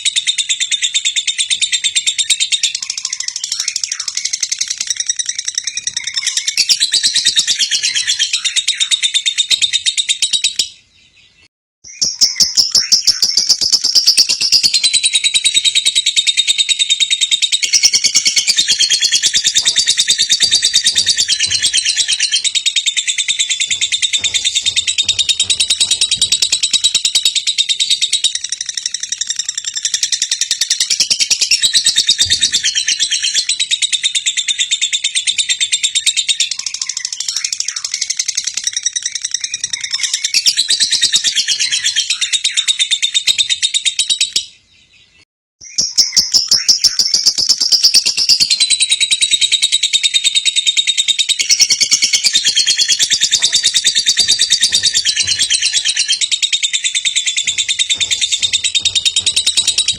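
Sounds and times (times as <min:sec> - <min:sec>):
lovebird chattering trills: 0:12.0 - 0:34.1, 0:51.4 - 0:59.9.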